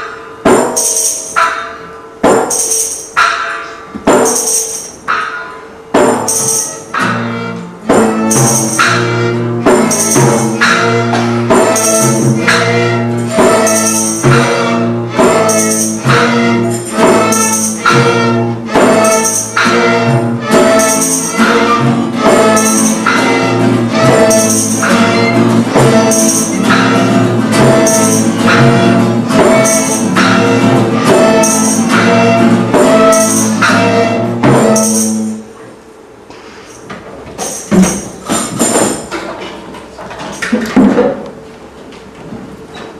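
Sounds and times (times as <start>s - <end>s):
tambourine beat: 0.4s - 1.6s, 2.2s - 3.3s, 4.0s - 35.4s, 37.4s - 39.2s
sustained instrument chords: 6.9s - 35.6s.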